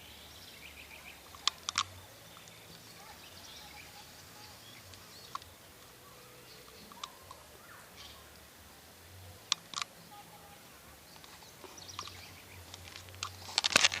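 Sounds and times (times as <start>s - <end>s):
faint bird chirps: 0.0s - 8.5s, 9.9s - 13.5s
low steady hum: 0.0s - 14.0s
sharp clicks: 1.2s - 2.9s, 4.8s - 5.9s, 6.6s - 7.4s, 9.4s - 10.0s, 11.1s - 14.0s.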